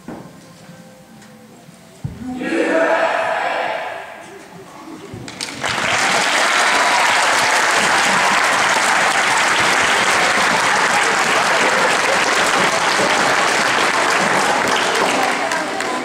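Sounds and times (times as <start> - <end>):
audience applauding: 5.3 - 16.0.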